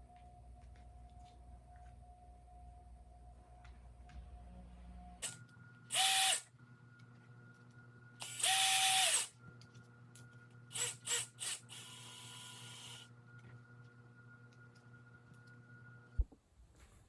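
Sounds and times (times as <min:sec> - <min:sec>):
power drill driving screws: 0:05.2 - 0:06.5, 0:08.2 - 0:09.3, 0:10.7 - 0:13.1.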